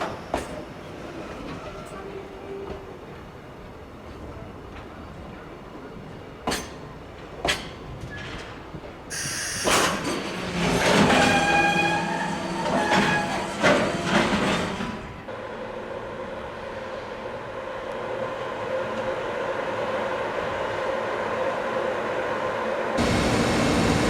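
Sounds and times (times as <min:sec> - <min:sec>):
train running with wheel noise: 0:00.0 - 0:24.0
hiss of air: 0:09.1 - 0:09.9.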